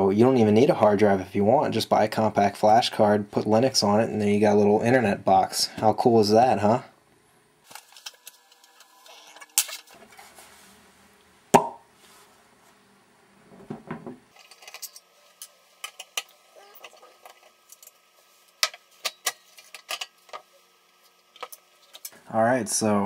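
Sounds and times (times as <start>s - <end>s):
metal parts clicking and clinking: 14.3s - 18.0s, 18.6s - 20.5s.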